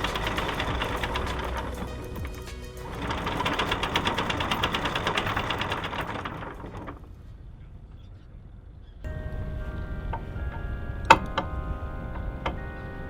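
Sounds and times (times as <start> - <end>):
boat machinery clattering: 0.0 - 7.2.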